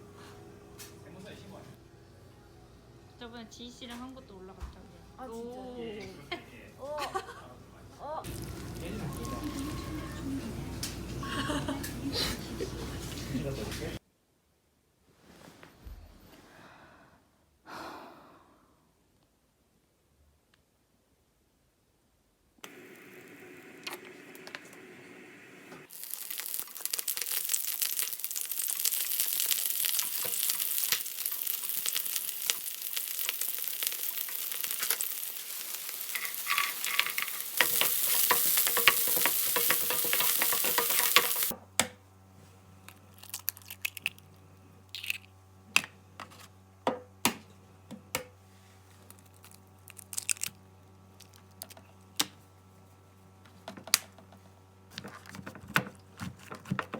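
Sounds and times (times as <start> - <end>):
food sizzling in a hot pan: 8.2 - 10.2, 22.7 - 41.6.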